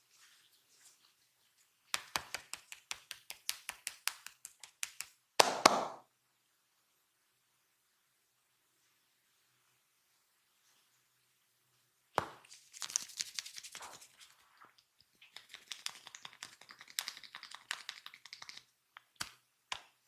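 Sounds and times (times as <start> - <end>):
hands rubbing crackling and rustling: 0.0 - 5.2, 12.2 - 20.0.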